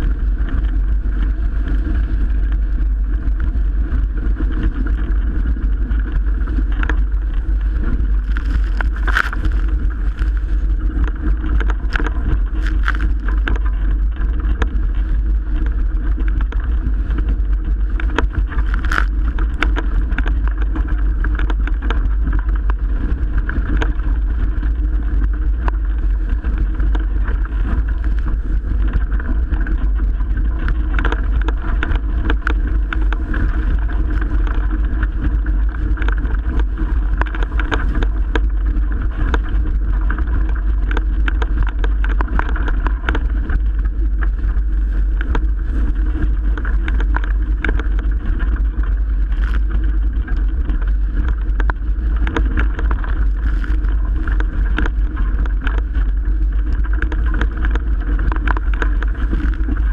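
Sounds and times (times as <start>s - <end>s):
water rushing past boat: 0.0s - 59.9s
wind buffeting microphone: 0.0s - 59.9s.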